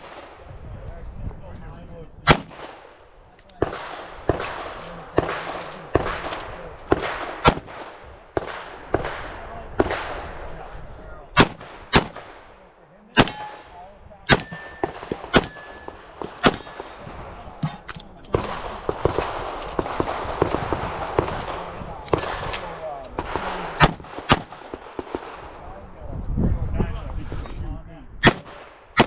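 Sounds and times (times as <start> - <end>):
metallic ring of steel targets: 13.2 - 16.9.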